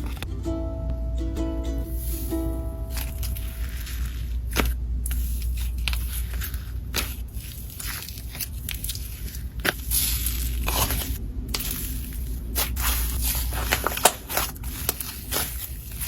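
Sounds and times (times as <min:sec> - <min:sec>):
slime squishing and crackling: 0:02.9 - 0:16.0.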